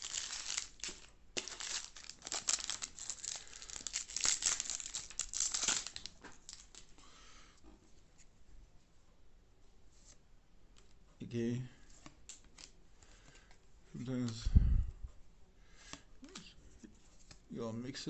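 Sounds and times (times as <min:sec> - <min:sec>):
wrapper tearing and crinkling: 0:00.0 - 0:06.9.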